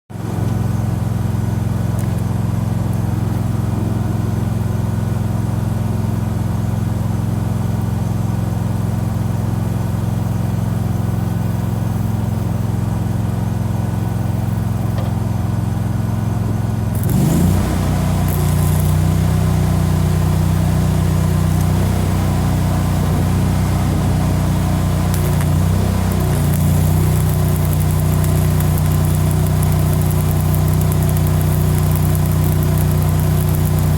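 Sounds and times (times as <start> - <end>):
engine running: 0.1 - 33.9
hiss: 17.0 - 33.9.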